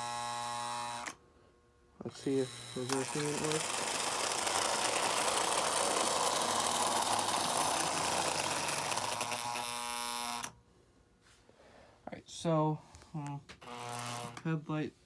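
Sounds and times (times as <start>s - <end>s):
toy train motor whirring rattle: 2.1s - 10.6s.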